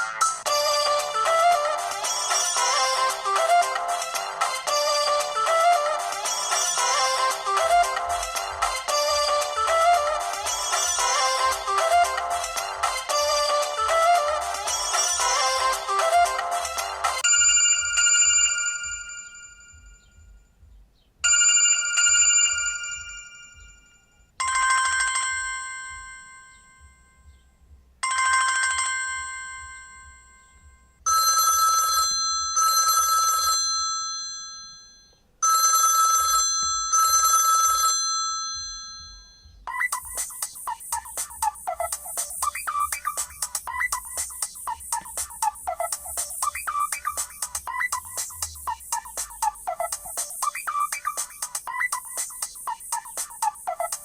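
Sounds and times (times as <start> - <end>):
melodic ringtone: 0.0 - 20.3, 21.2 - 27.1, 28.0 - 54.0
bell-like ringing tones: 17.2 - 20.5, 21.2 - 27.4, 28.0 - 54.0.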